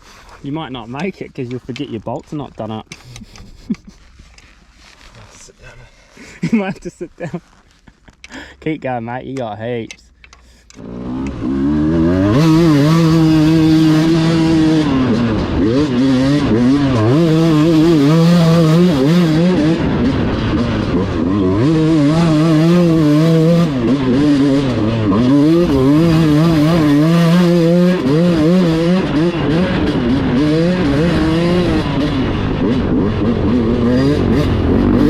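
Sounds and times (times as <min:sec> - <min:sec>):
dirt bike engine revving: 0:10.8 - 0:35.0.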